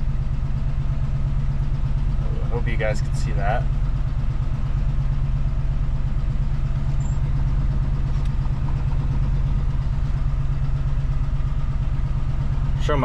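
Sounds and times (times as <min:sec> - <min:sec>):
pickup engine idling: 0:00.0 - 0:13.0.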